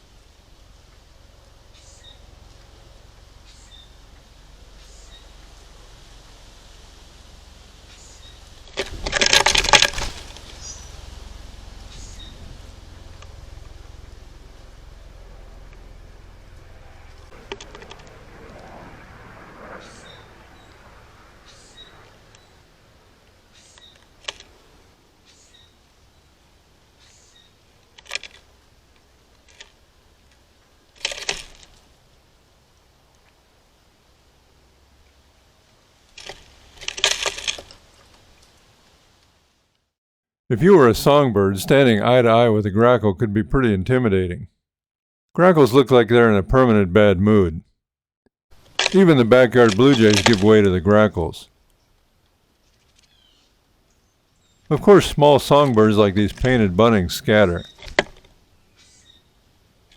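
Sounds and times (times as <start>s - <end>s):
birds clattering on a feeder: 7.9s - 13.7s, 31.0s - 31.9s.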